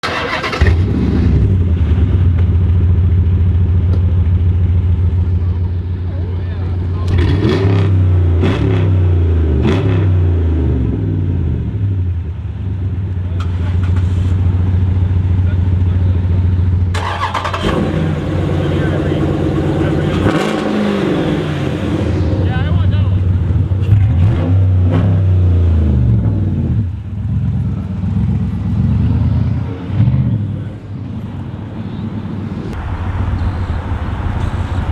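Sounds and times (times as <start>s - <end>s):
car engine starting and running: 0.0s - 34.9s
burst of noise: 32.3s - 34.9s.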